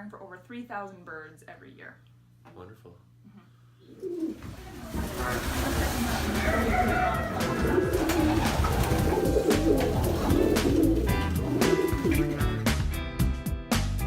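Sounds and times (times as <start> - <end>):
pigeons cooing: 3.8 - 12.7
guitar music: 6.0 - 14.0.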